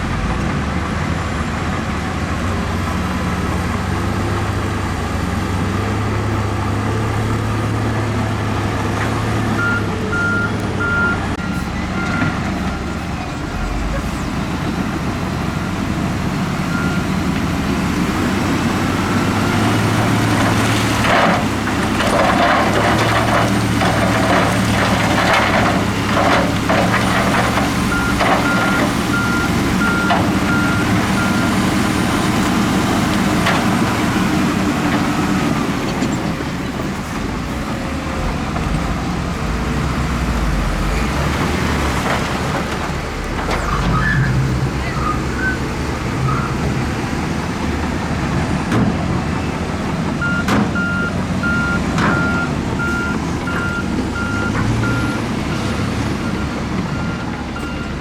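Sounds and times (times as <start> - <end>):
diesel machinery running: 0.0 - 58.0
reversing alarm beeping: 9.6 - 13.0, 26.8 - 31.8, 50.2 - 58.0.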